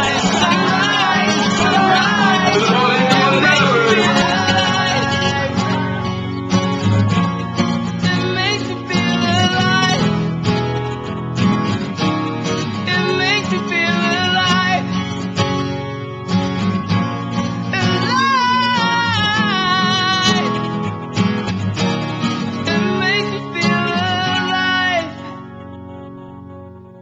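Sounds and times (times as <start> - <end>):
person singing: 0.0 - 6.4, 8.0 - 10.3, 12.8 - 14.9, 22.7 - 25.4
strummed guitar: 0.0 - 27.0.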